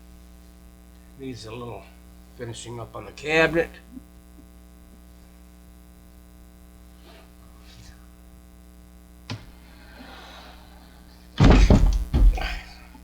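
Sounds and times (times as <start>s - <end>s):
electrical mains hum: 0.0s - 13.0s.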